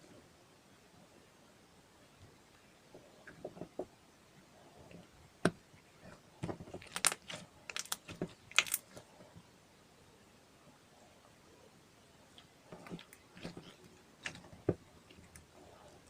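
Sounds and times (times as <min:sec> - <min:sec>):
slime clicking and popping: 0:06.8 - 0:09.0.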